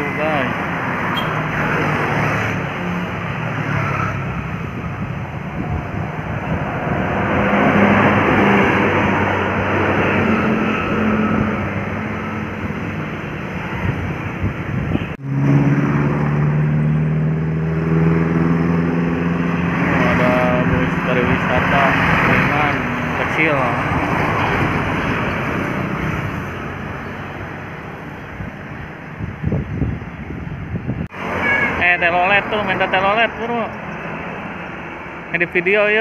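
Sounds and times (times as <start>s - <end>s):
bus engines: 0.0s - 36.0s
road traffic passing: 0.0s - 36.0s
steady engine drone: 4.2s - 28.7s.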